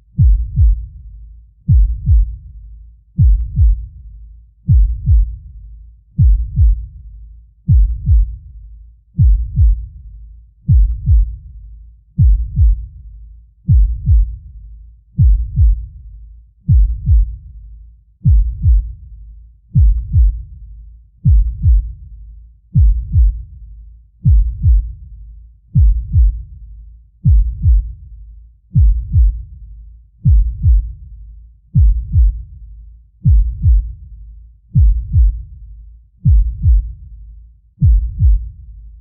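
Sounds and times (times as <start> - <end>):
deep heartbeat thumps: 0.0 - 1.0, 1.6 - 2.6, 3.2 - 4.0, 4.6 - 5.5, 6.2 - 7.0, 7.7 - 8.4, 9.2 - 10.0, 10.6 - 11.5, 12.2 - 13.0, 13.6 - 14.5, 15.2 - 16.0, 16.6 - 17.5, 18.2 - 19.1, 19.7 - 20.6, 21.2 - 22.1, 22.7 - 23.6, 24.2 - 25.1, 25.7 - 26.6, 27.2 - 28.1, 28.7 - 29.6, 30.2 - 32.6, 33.2 - 37.2, 37.8 - 39.0.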